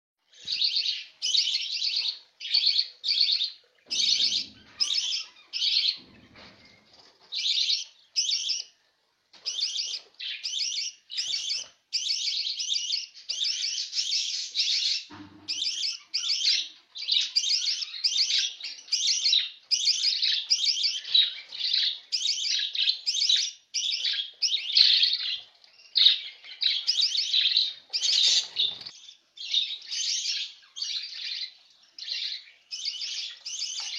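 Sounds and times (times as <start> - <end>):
bird chirping in trilled bursts: 0.3 - 8.8, 9.5 - 33.9.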